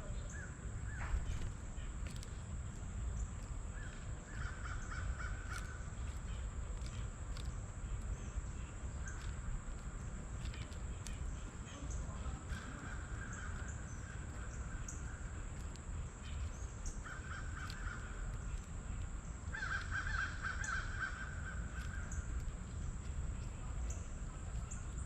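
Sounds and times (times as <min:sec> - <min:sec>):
bird calling: 0:00.0 - 0:25.0.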